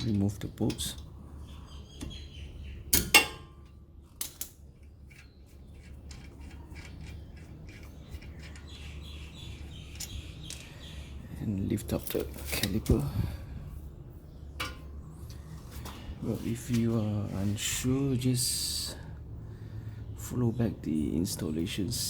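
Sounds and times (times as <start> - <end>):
sharp metal clank: 2.9 - 3.6
metal tools clinking and knocking: 14.6 - 14.9.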